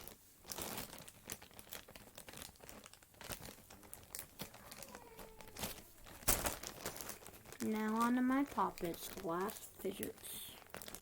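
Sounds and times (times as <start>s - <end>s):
bag crinkling and rustling: 0.0s - 11.0s
faint squeak: 4.4s - 6.1s.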